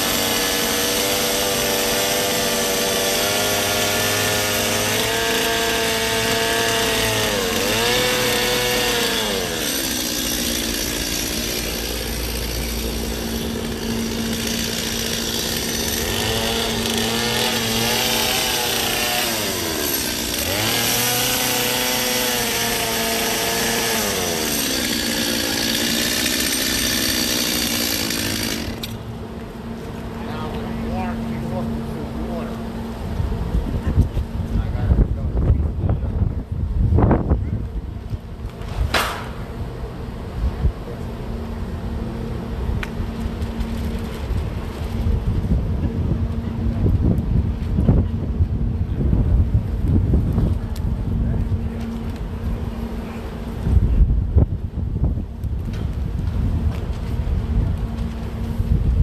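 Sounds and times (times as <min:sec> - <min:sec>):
chainsaw carving ice: 0:00.0 - 0:29.0.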